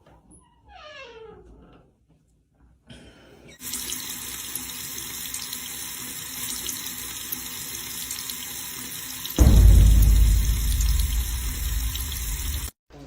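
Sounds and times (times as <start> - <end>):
water running into a sink: 3.6 - 12.7.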